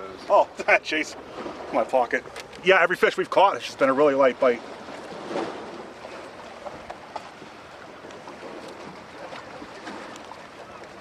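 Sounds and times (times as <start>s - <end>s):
lake water lapping at shore: 0.0s - 11.0s
wind: 0.0s - 11.0s.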